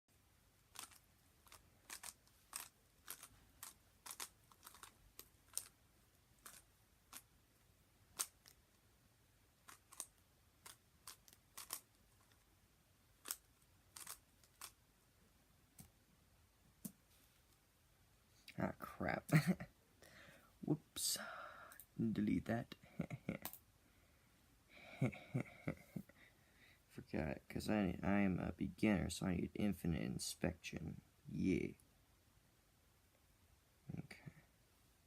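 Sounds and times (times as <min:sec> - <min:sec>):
speed cube clicking as it turns: 0:00.7 - 0:05.8, 0:06.4 - 0:07.3, 0:08.1 - 0:08.6, 0:09.6 - 0:12.4, 0:13.2 - 0:14.8.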